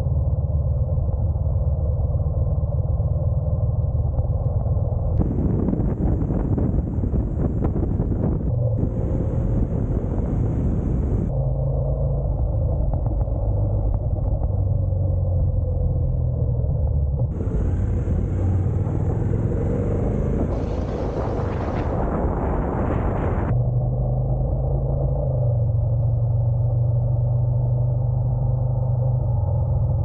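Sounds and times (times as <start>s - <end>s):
motorcycle engine drone: 0.0s - 30.0s
wind rush on microphone: 3.2s - 23.9s.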